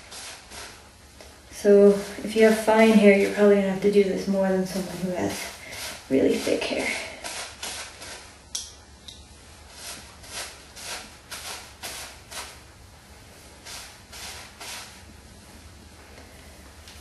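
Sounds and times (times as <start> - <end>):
comb rasping through hair: 0.0 - 8.4, 9.7 - 12.6, 13.5 - 15.2.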